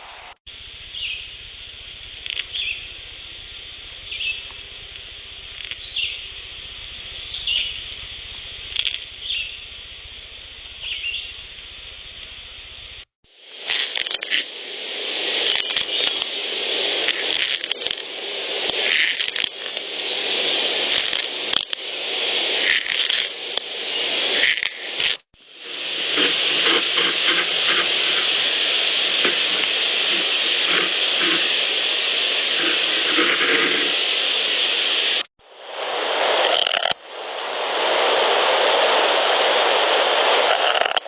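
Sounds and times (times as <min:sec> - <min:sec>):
steady hiss: 0:00.0 - 0:41.0
long rasping scratching noise: 0:24.2 - 0:35.3, 0:39.5 - 0:41.0.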